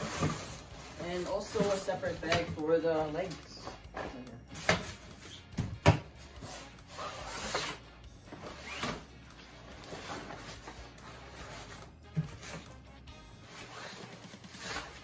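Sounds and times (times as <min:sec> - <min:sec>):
fabric bags rustling and sliding: 0:00.0 - 0:02.2, 0:06.4 - 0:12.7.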